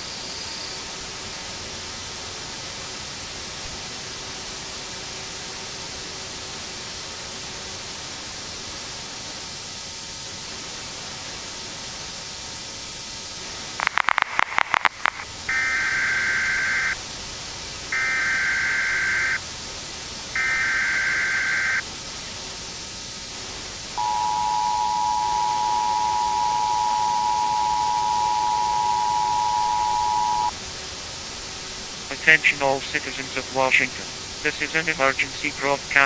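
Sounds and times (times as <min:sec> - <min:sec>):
tape hiss: 0:12.8 - 0:36.0
two-tone attention signal: 0:24.0 - 0:30.5.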